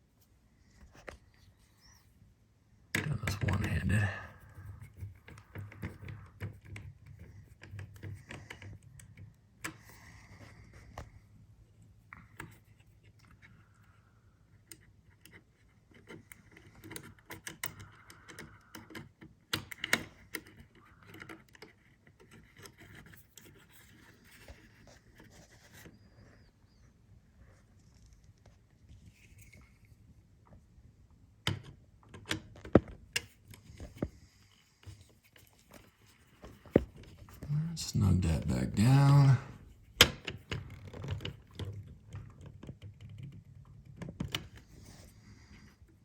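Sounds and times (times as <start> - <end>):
screwdriver scratching and clicking: 14.7 - 24.4.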